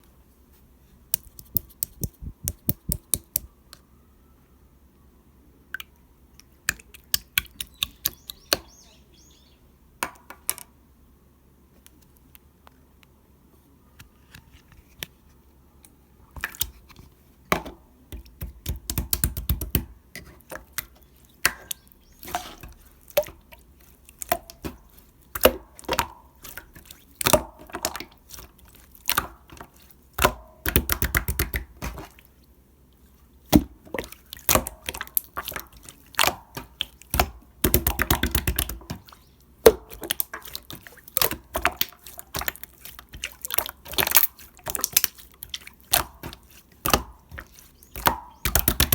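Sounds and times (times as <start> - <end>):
slime squishing and popping: 1.2 - 3.5, 30.2 - 32.1, 33.5 - 48.9.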